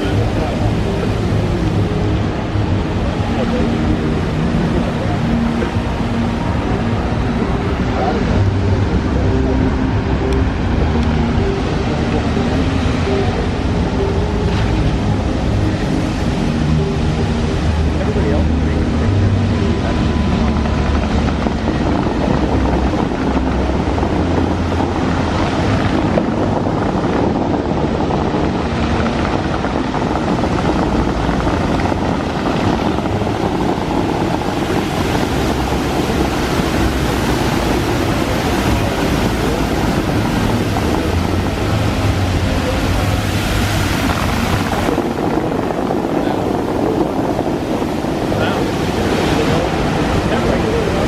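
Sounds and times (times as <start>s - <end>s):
fountain water jets rushing: 0.0s - 51.0s.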